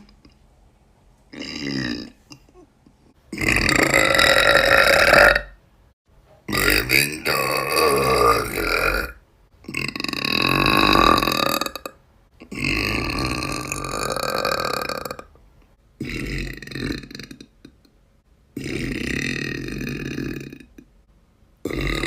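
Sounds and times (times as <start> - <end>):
girl burping loudly: 1.3 - 2.6, 3.3 - 5.6, 6.5 - 15.3, 21.6 - 22.0.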